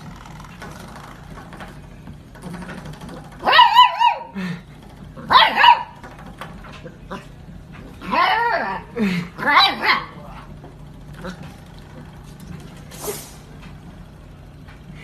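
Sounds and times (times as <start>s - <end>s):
dog yelping: 3.4s - 4.4s, 5.2s - 6.0s, 8.0s - 10.2s.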